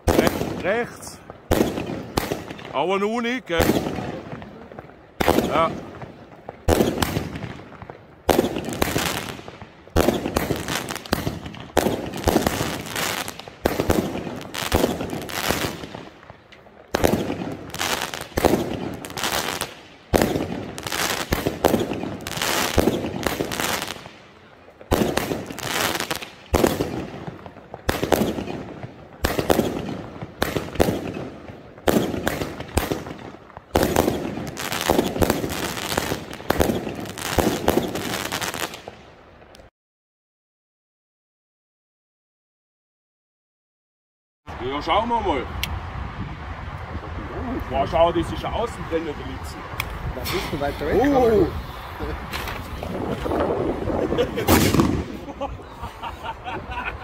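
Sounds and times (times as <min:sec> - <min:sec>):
firework bangs: 0:00.0 - 0:39.2, 0:49.4 - 0:57.0.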